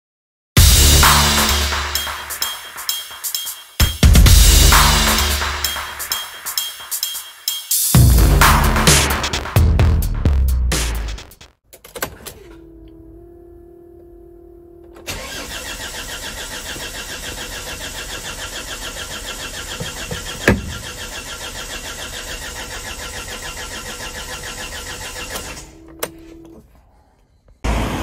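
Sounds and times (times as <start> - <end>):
diesel engine cranking: 11.7 - 26.8.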